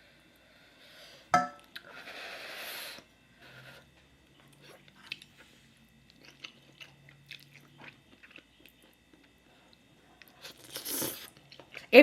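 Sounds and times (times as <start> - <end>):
person chewing food: 3.4 - 11.9.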